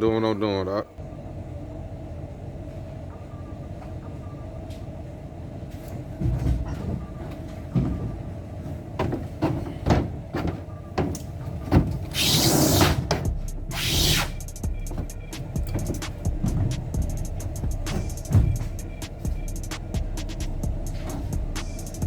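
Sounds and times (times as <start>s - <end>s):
vehicle engine humming: 0.0s - 22.0s
knocks and rattles: 6.2s - 12.2s, 12.9s - 22.0s
rushing noise burst: 13.5s - 14.7s.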